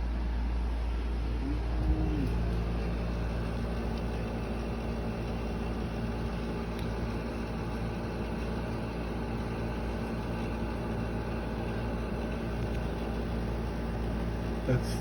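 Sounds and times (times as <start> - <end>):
air conditioners humming: 0.0 - 15.0.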